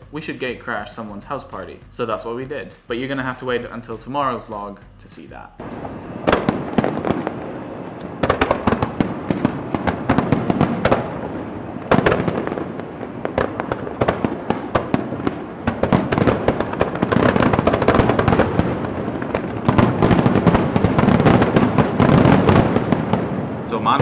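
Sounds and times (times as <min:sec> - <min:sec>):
fireworks crackling and banging: 0:00.0 - 0:24.0
sharp firework bang: 0:05.6 - 0:24.0.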